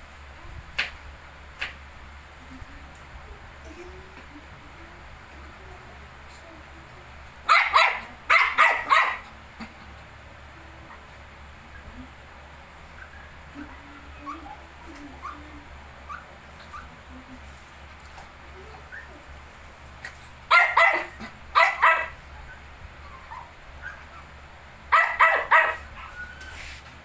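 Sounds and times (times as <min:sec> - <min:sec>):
dog barking: 0:07.5 - 0:09.4, 0:20.5 - 0:22.2, 0:24.9 - 0:26.1
puppies squeaking: 0:12.8 - 0:17.1, 0:18.6 - 0:19.3, 0:21.6 - 0:26.8.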